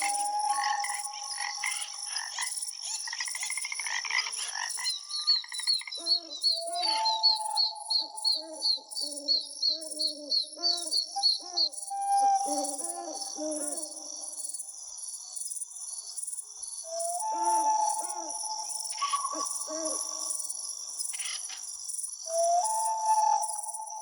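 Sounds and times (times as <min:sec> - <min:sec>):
birds singing: 0:00.0 - 0:14.3, 0:16.9 - 0:20.3
frogs croaking: 0:00.0 - 0:16.0, 0:16.6 - 0:24.0.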